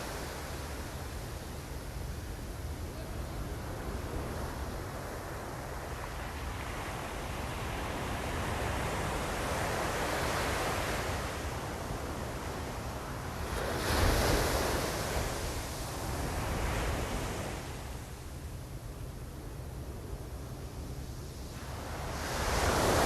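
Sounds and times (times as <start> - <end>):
ocean surf washing in: 21.6 - 23.0.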